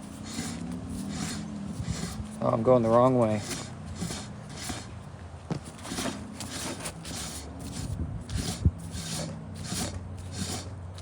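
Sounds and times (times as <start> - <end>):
metal-on-metal scraping: 0.0 - 11.0.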